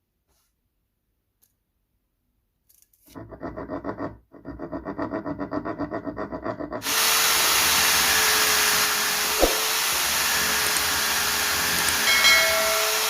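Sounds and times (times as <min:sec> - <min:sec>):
power tool running: 0:06.8 - 0:13.0.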